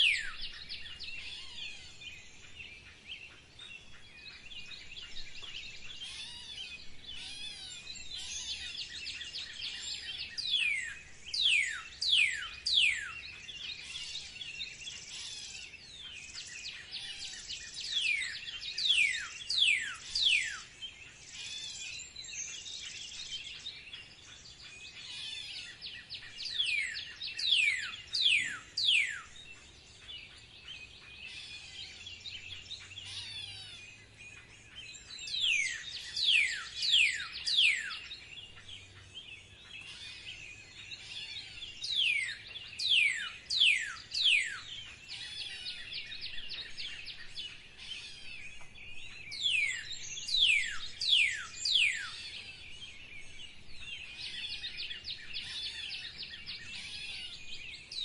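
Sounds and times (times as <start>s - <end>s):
birds chirping high: 0.0s - 58.0s.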